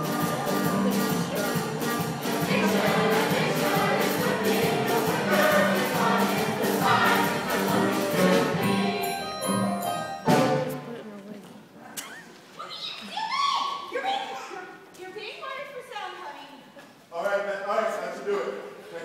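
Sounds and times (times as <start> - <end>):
choir singing over a beat: 0.0 - 9.4.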